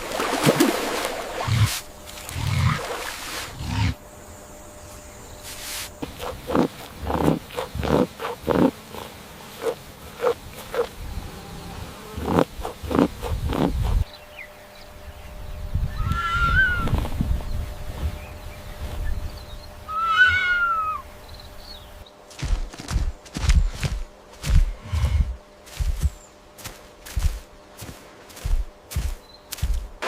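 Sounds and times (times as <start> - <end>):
large animal deep grunts: 1.5 - 4.0
high rising and falling animal call: 15.9 - 17.0, 19.9 - 21.1.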